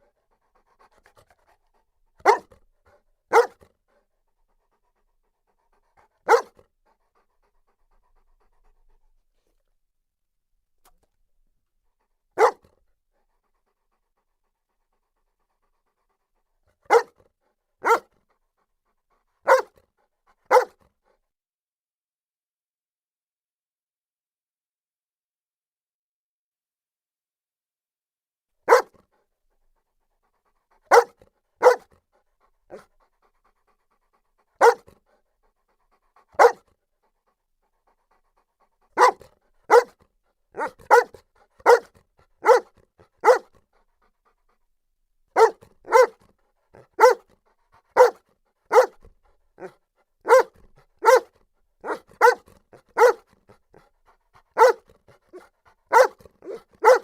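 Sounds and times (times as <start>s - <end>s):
dog barking: 2.2s - 3.8s, 6.0s - 6.7s, 12.4s - 12.7s, 16.8s - 18.2s, 19.4s - 19.8s, 20.5s - 20.8s, 28.6s - 29.0s, 30.8s - 32.0s, 32.7s - 32.9s, 34.6s - 35.0s, 36.2s - 36.7s, 38.9s - 43.6s, 45.3s - 53.6s, 54.5s - 57.0s.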